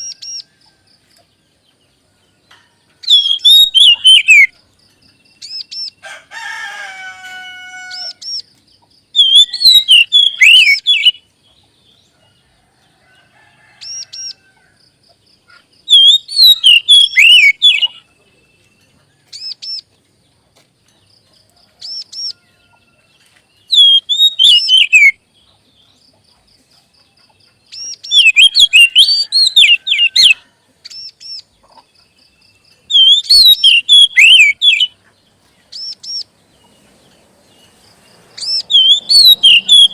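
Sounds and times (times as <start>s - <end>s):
harsh bird call: 3.0s - 4.5s, 9.2s - 11.2s, 15.9s - 18.1s, 23.7s - 25.2s, 27.8s - 30.4s, 32.9s - 35.0s, 37.6s - 39.9s
magpie-robin whistled song: 3.0s - 4.6s, 9.1s - 11.2s, 15.9s - 19.9s, 23.6s - 25.2s, 27.6s - 31.5s, 32.8s - 35.0s, 35.7s - 36.3s, 38.4s - 39.9s.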